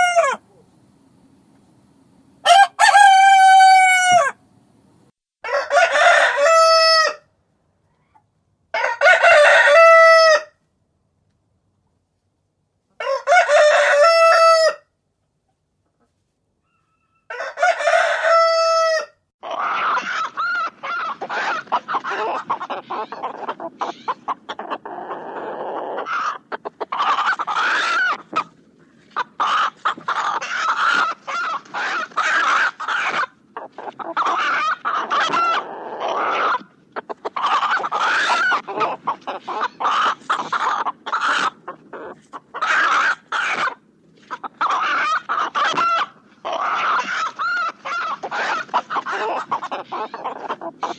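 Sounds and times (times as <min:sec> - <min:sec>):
roosters crowing: 0:00.0 - 0:00.5, 0:02.4 - 0:04.4, 0:05.4 - 0:07.3, 0:08.7 - 0:10.6, 0:13.0 - 0:14.9, 0:16.6 - 0:28.4, 0:29.4 - 0:36.7, 0:37.3 - 0:43.8, 0:44.6 - 0:50.9
chickens clucking: 0:15.5 - 0:17.0, 0:19.4 - 0:50.9.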